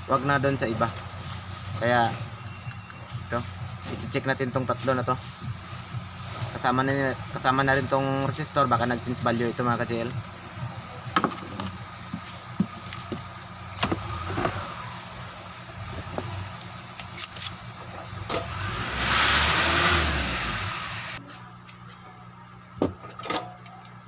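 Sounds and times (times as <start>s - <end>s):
steady low hum: 0.0s - 23.1s
motor vehicle passing: 18.5s - 21.2s.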